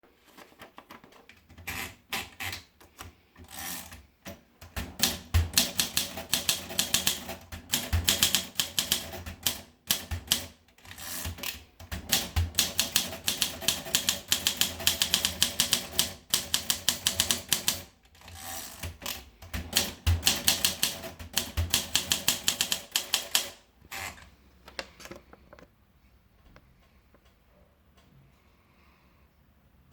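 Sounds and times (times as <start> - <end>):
manual typewriter typing: 0.6 - 24.2.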